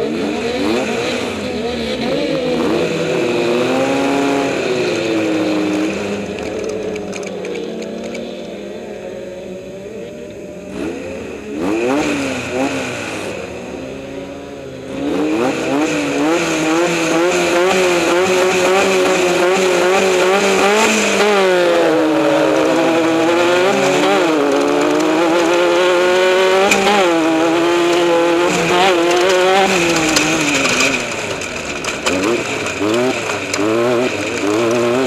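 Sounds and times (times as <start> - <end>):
race vehicle engine revving: 0.0 - 35.0.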